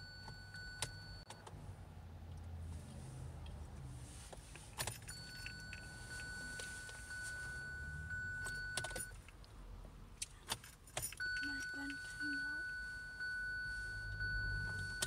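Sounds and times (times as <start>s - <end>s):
car keys jangling: 4.4s - 9.5s, 10.3s - 15.0s
steady high electronic beep: 11.2s - 15.0s.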